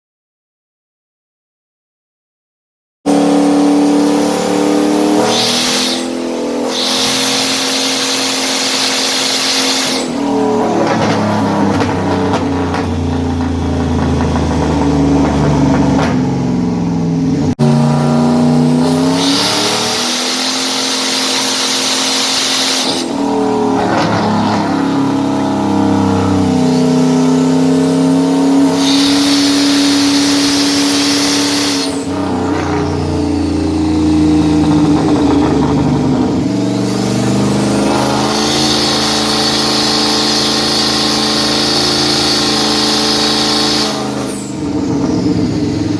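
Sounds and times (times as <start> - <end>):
engine revving on a dyno: 3.1 - 45.9
loud rushing hiss of venting boost: 6.7 - 10.6.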